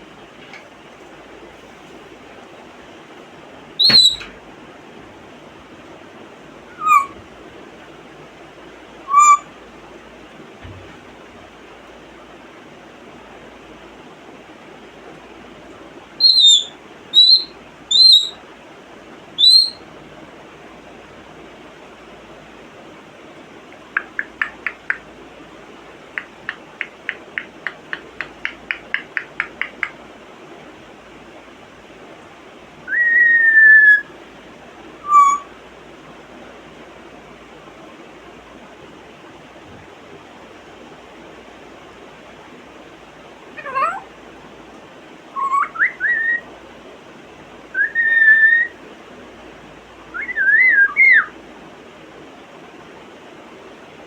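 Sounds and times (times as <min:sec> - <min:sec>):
parrot whistling: 0:03.8 - 0:04.3, 0:06.7 - 0:07.2, 0:09.1 - 0:09.5, 0:16.2 - 0:18.4, 0:19.4 - 0:19.8, 0:32.9 - 0:34.1, 0:35.0 - 0:35.5, 0:45.4 - 0:46.4, 0:47.8 - 0:48.7, 0:50.2 - 0:51.3
parrot clicking: 0:23.7 - 0:25.1, 0:26.1 - 0:30.0.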